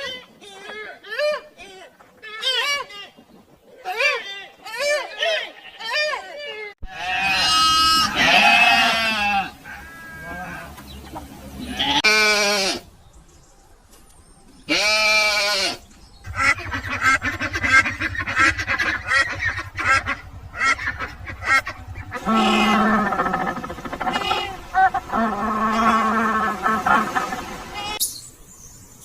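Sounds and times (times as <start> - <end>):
animal calls: 14.7 - 28.0.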